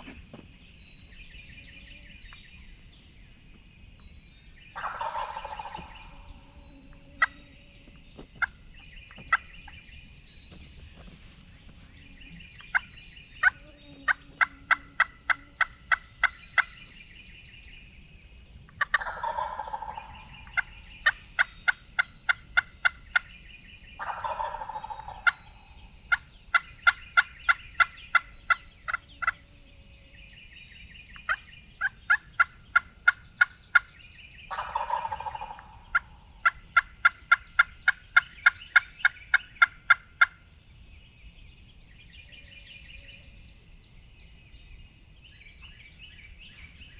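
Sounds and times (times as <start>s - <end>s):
turkey gobbling: 4.8s - 7.4s, 12.7s - 16.7s, 18.8s - 23.3s, 24.0s - 29.4s, 31.2s - 33.9s, 34.5s - 40.4s.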